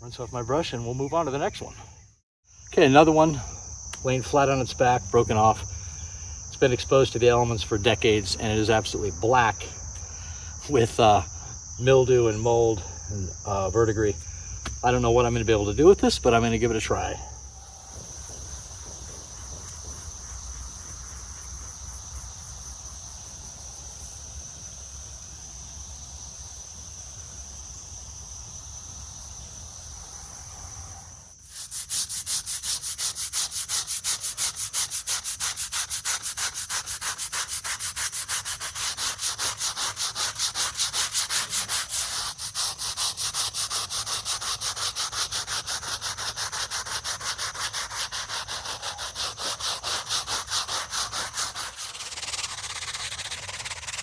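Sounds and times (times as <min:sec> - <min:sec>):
crickets trilling: 0:00.0 - 0:54.0
brush scrubbing stone: 0:16.0 - 0:17.2, 0:17.9 - 0:22.4, 0:31.4 - 0:54.0.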